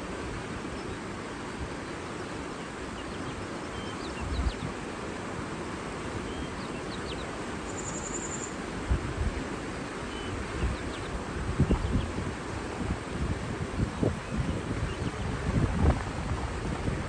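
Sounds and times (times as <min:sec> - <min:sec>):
bird chirps: 0:06.3 - 0:08.6
steady rushing noise: 0:08.6 - 0:17.0.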